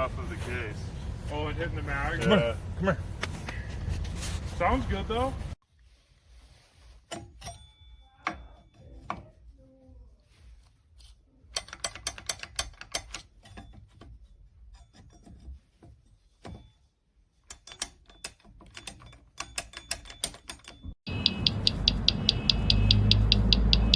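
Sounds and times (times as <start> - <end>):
mechanical clicking and rattling: 11.5 - 13.5.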